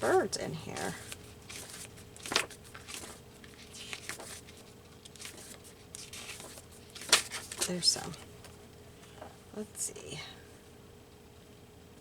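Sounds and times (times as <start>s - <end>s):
book pages rustling: 0.0s - 8.6s.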